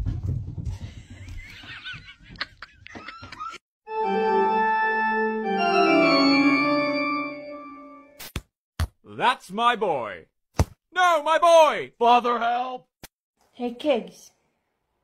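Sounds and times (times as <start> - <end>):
sustained organ chords: 3.9 - 8.1.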